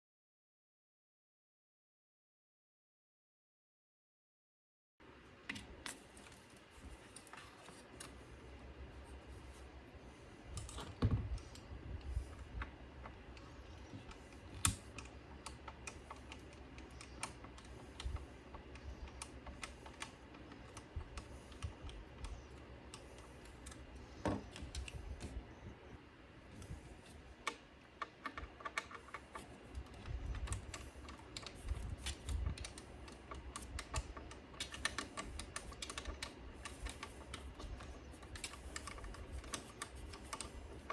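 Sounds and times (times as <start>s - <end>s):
hands clicking and tapping parts: 10.5s - 25.4s, 26.6s - 40.9s.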